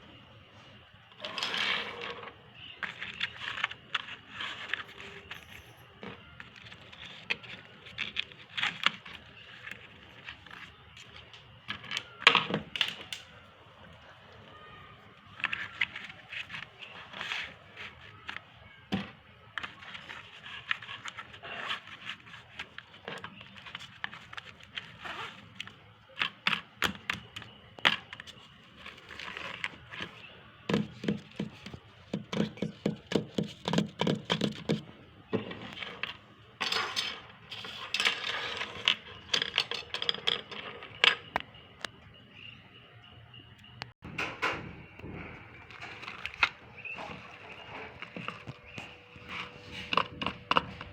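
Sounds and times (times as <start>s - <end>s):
packaging crackling and rustling: 1.2s - 13.4s, 15.2s - 18.8s, 19.4s - 34.8s, 45.4s - 50.9s.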